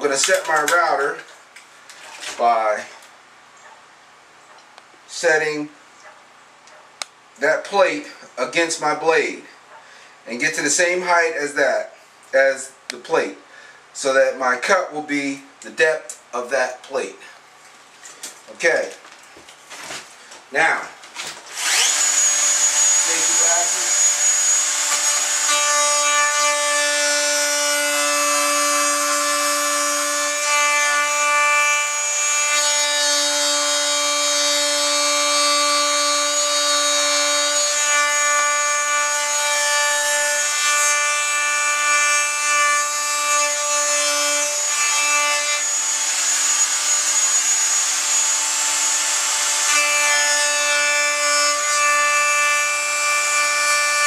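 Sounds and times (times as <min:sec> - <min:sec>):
electric router high whine: 0:21.5 - 0:31.2
router bit cutting wood: 0:21.5 - 0:54.0.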